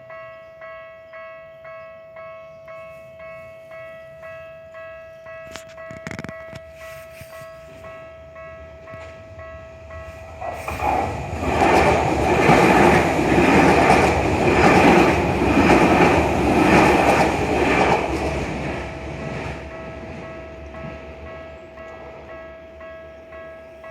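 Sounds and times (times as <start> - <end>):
train wheels clattering over rail joints: 10.4 - 21.1.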